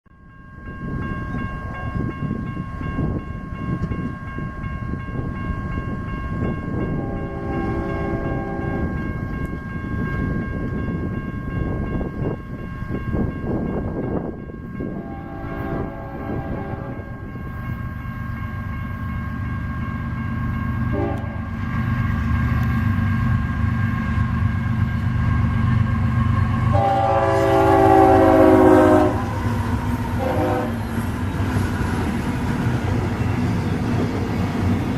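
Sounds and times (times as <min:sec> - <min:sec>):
train horn blasts: 0:06.9 - 0:09.1, 0:14.9 - 0:17.3, 0:20.9 - 0:21.6, 0:26.7 - 0:29.5, 0:30.2 - 0:30.9.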